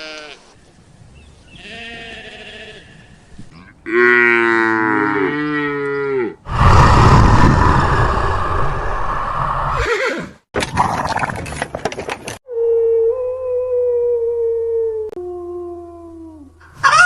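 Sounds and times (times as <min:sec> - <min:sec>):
cow mooing: 0:03.8 - 0:06.4.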